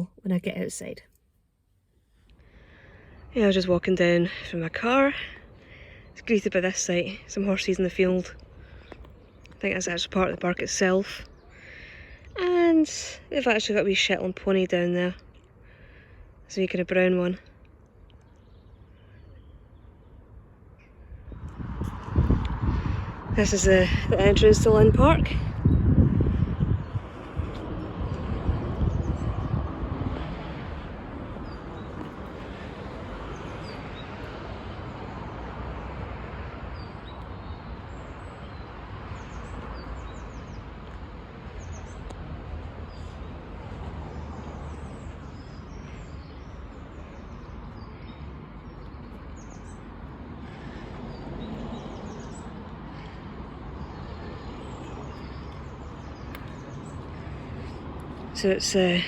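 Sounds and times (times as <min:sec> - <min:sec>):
small birds chirping: 0:02.4 - 0:22.3, 0:31.3 - 0:35.9, 0:36.6 - 0:59.0.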